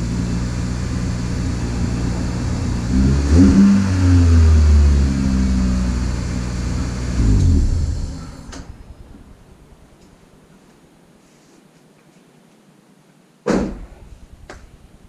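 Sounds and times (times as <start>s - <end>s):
car engine revving: 0.0s - 9.6s.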